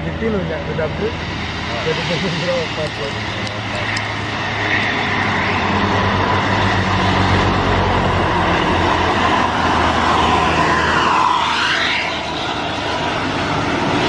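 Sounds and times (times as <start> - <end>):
heavy diesel engine droning: 1.8 - 14.0
thin steady whine: 8.2 - 14.0.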